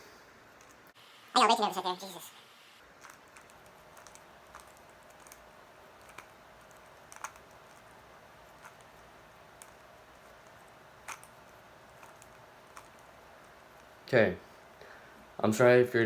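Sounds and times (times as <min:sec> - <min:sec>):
faint steady hum: 0:00.0 - 0:16.0
puzzle cube plastic clicks: 0:02.8 - 0:05.4, 0:06.0 - 0:07.9.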